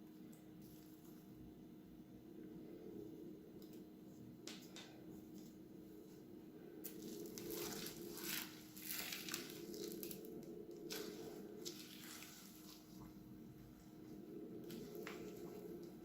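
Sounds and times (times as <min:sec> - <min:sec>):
crunchy slime crackling: 0:06.8 - 0:13.0.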